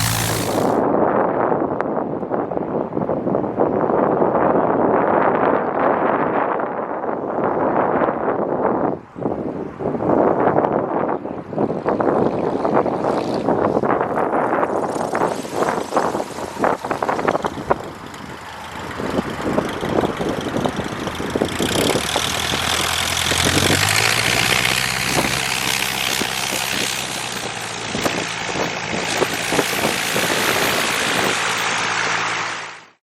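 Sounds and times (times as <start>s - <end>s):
rush of air noise: 0.0s - 0.8s
light aircraft engine and propeller: 0.0s - 0.9s, 10.4s - 33.0s.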